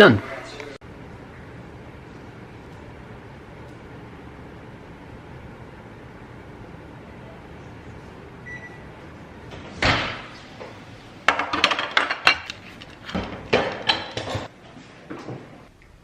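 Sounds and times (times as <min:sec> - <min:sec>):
dishes and utensils clattering: 0:11.3 - 0:14.5.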